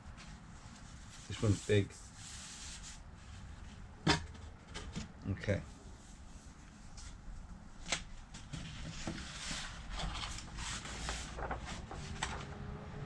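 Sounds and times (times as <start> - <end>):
paper rustling and crinkling: 7.8 - 12.6.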